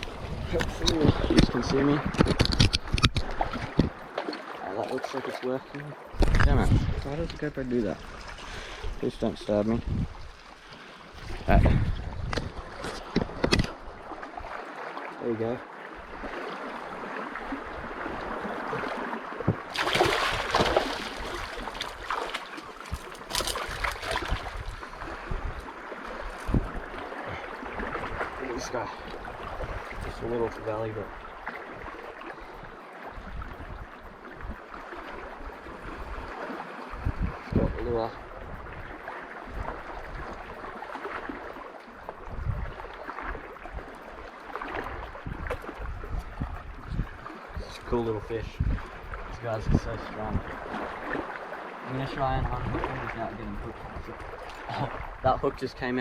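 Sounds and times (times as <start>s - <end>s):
seawater sloshing over rocks: 0.0s - 56.0s
water splashing: 0.0s - 56.0s
low thumps on microphone: 6.2s - 7.4s.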